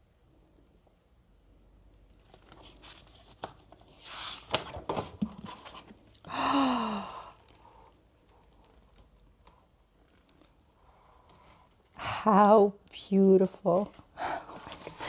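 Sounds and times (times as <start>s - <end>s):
book and packaging rustling: 2.0s - 6.3s, 7.4s - 12.0s, 13.6s - 15.0s.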